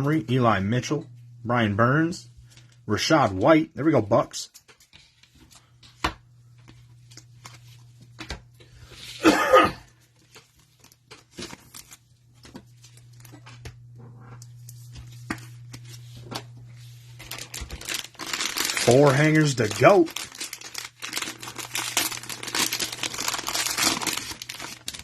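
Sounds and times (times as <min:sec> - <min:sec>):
steady low hum: 0:00.0 - 0:25.0
cards and packaging crinkling: 0:10.0 - 0:25.0
plastic wrapper ripping: 0:10.2 - 0:12.1, 0:17.1 - 0:25.0.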